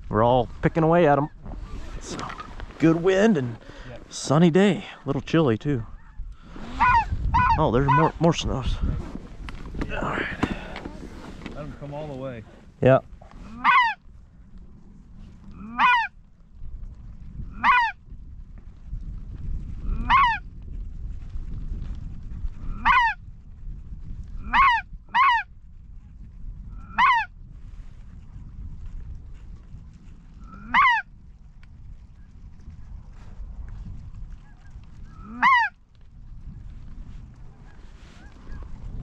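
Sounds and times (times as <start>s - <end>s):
wind rumble on microphone: 0.0s - 39.0s
goose honks: 6.8s - 8.1s, 13.4s - 14.0s, 15.6s - 16.1s, 17.5s - 18.0s, 19.9s - 20.4s, 22.7s - 23.2s, 24.4s - 25.5s, 26.8s - 27.3s, 30.4s - 31.1s, 35.2s - 35.8s.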